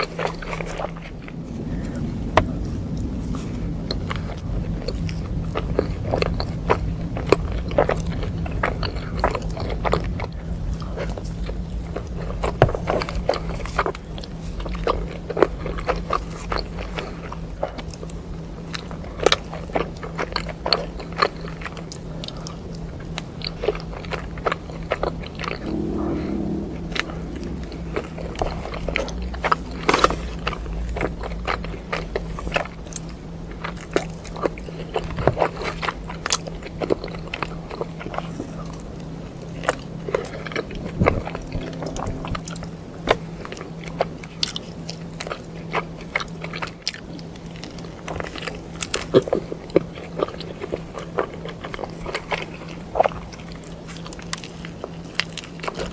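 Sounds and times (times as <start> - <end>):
steady low hum: 0.0 - 12.4, 25.5 - 33.5, 36.6 - 45.6.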